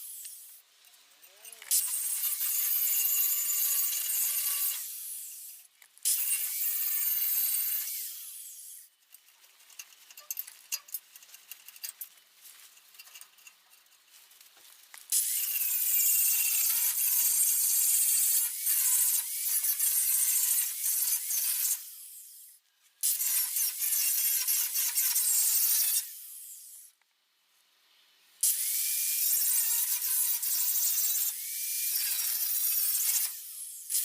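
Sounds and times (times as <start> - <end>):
angle grinder on steel: 1.2 - 12.0
scraping and ticking: 9.0 - 15.1.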